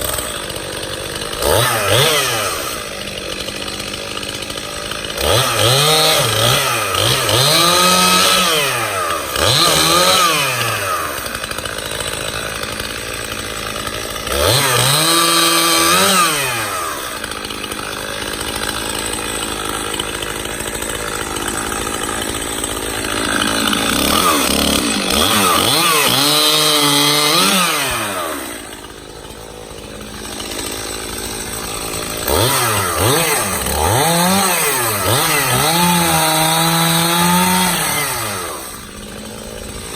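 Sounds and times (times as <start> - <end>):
chainsaw revving while cutting wood: 0.0 - 39.9.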